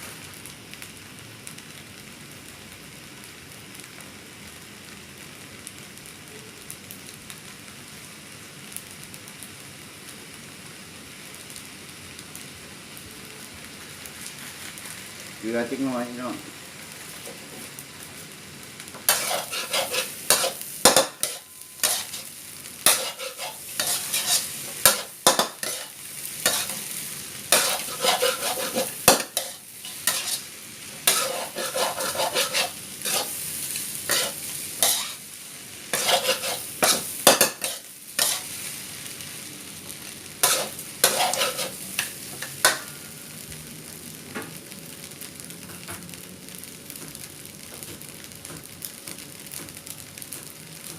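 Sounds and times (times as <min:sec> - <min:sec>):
rice sizzling in a pan: 0:00.0 - 0:50.9
spatula scraping a pan: 0:19.1 - 0:26.9, 0:27.5 - 0:33.4, 0:34.0 - 0:35.2, 0:35.9 - 0:38.7, 0:40.4 - 0:42.8.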